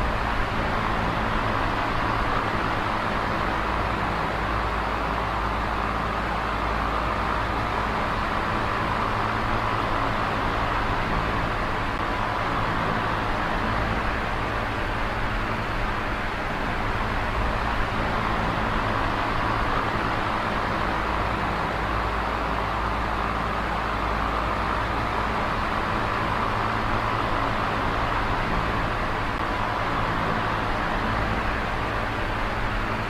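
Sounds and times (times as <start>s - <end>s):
electric fan running: 0.0s - 33.0s.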